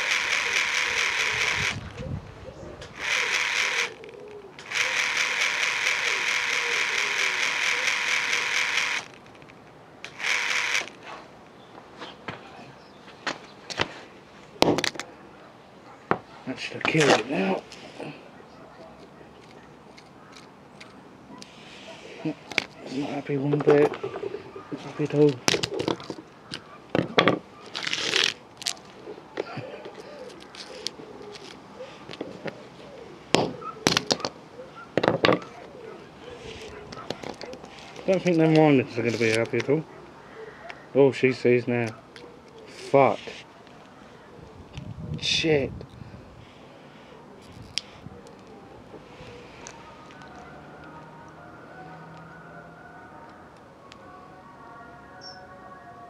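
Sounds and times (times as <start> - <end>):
fan heater crackling: 0.0 - 11.6.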